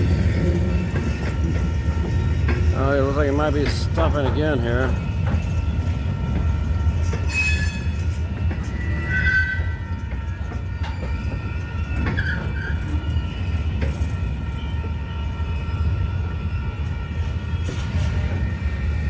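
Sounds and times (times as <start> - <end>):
freight train rumbling by: 0.0 - 19.0
train clanks: 0.0 - 19.0
wheels squealing: 6.9 - 14.1.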